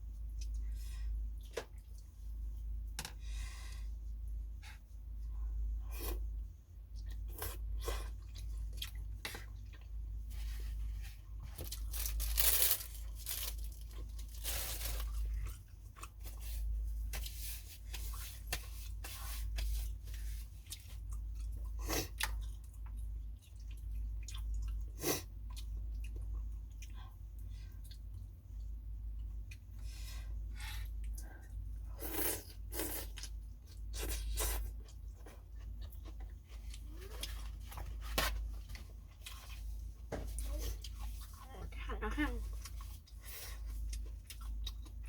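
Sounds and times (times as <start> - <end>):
person chewing: 5.9 - 10.0, 11.7 - 29.8, 31.0 - 37.8, 42.5 - 45.0.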